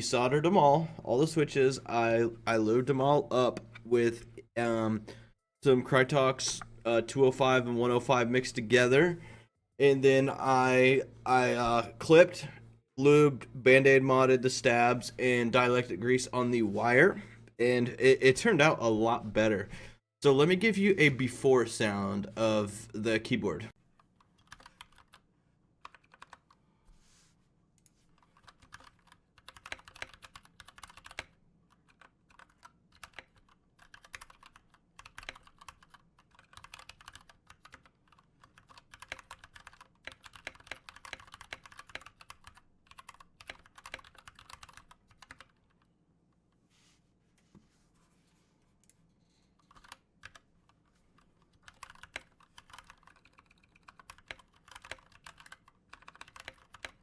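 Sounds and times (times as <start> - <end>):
mechanical keyboard typing: 24.3 - 25.2, 25.8 - 26.6, 28.2 - 45.8, 49.6 - 50.4, 51.2 - 57.0.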